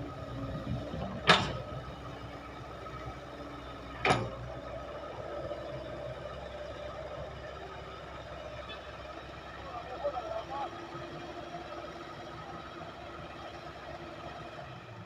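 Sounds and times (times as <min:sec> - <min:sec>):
heavy diesel machinery running: 0:00.0 - 0:15.0.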